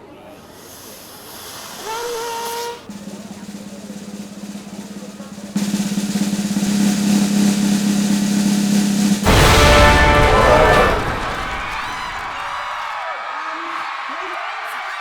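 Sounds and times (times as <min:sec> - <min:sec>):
cymbal crash: 0:02.9 - 0:12.6
snare drum roll: 0:02.9 - 0:12.7.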